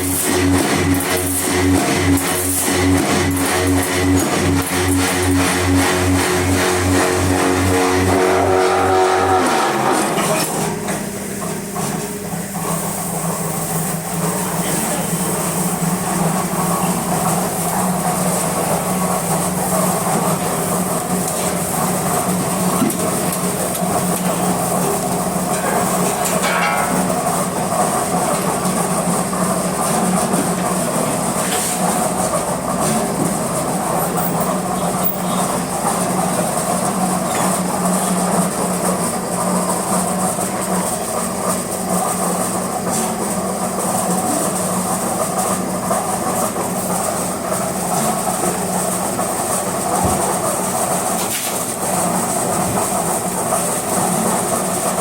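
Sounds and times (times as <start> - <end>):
machinery rattling: 0.0 - 41.4
block-making machinery humming: 0.0 - 55.0.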